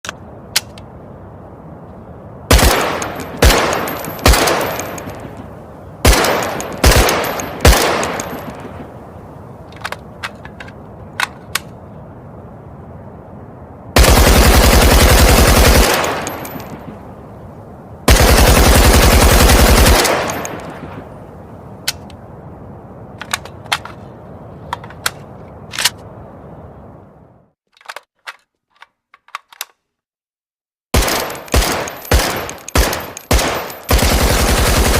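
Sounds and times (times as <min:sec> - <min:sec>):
small metallic clicks: 0:00.0 - 0:00.9, 0:09.6 - 0:11.8, 0:21.8 - 0:22.2, 0:23.2 - 0:26.1, 0:27.7 - 0:29.9
automatic gunfire bursts: 0:02.5 - 0:04.9, 0:06.0 - 0:08.2, 0:14.0 - 0:16.4, 0:18.1 - 0:20.5, 0:31.0 - 0:34.9
rifle single shots: 0:02.5 - 0:05.4, 0:06.0 - 0:08.8, 0:14.0 - 0:16.9, 0:19.4 - 0:21.0, 0:31.0 - 0:34.9.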